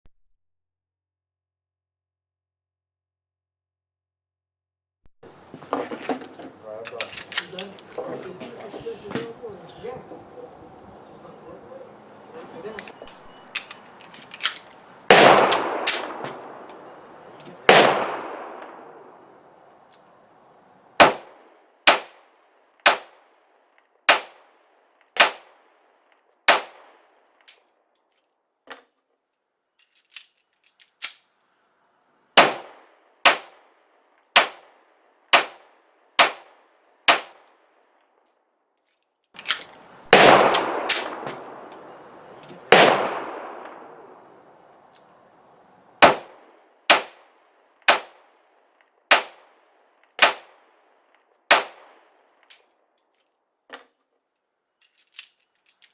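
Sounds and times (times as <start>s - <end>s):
pistol shots: 14.4s - 19.4s, 21.0s - 23.3s, 24.1s - 24.6s, 25.2s - 25.8s, 26.5s - 27.0s, 32.4s - 33.7s, 34.4s - 37.5s, 39.6s - 44.5s, 46.0s - 48.4s, 49.1s - 50.8s, 51.5s - 52.1s
loud gunshots with echo: 15.1s - 17.0s, 17.6s - 19.4s, 21.0s - 22.2s, 32.4s - 33.7s, 40.1s - 41.9s, 42.6s - 44.4s, 46.0s - 47.2s.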